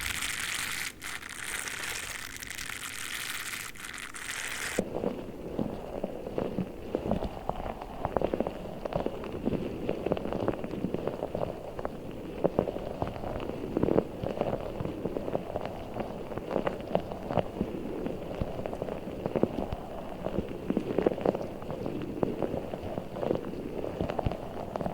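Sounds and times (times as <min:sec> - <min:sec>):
water-bead ball squishing: 0:00.0 - 0:04.8.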